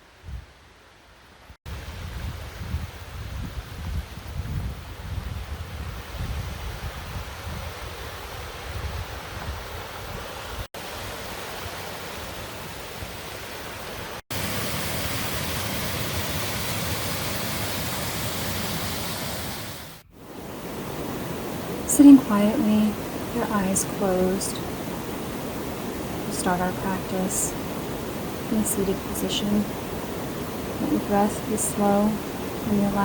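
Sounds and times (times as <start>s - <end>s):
wind rumble on microphone: 0.0s - 0.7s, 1.7s - 10.7s
waterfall rushing: 13.3s - 33.0s.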